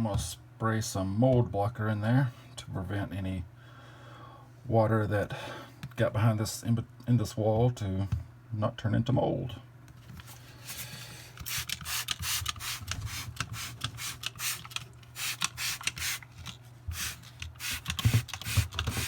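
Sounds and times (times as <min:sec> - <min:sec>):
spray can hissing squirts: 0:11.5 - 0:16.3, 0:16.9 - 0:19.0.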